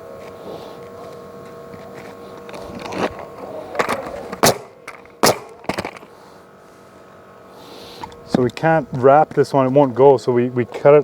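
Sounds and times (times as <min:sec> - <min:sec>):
hands rustling and scraping shingles: 0:00.2 - 0:07.0
sharp loud knocks: 0:04.4 - 0:05.8.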